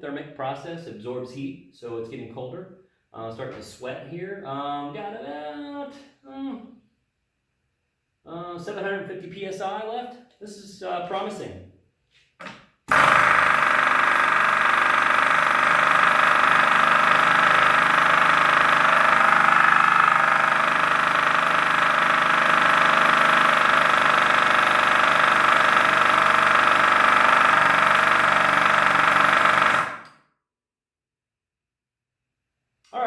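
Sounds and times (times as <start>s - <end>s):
pneumatic air hammer running: 12.9s - 30.2s.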